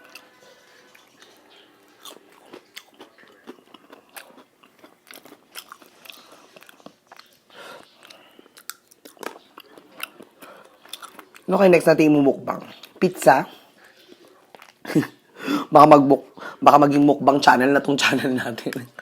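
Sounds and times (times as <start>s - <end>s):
chewing: 0.0s - 11.5s, 12.6s - 15.2s
crunching fried chicken skin: 0.0s - 11.5s.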